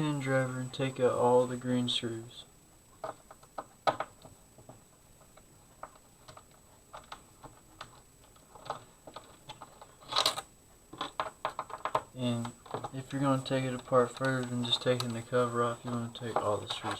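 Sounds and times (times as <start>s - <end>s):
rattle: 5.2s - 16.9s.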